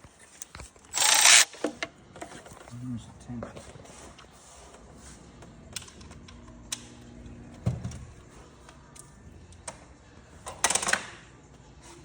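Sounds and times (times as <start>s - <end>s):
hand tools clicking on metal: 0.9s - 1.6s.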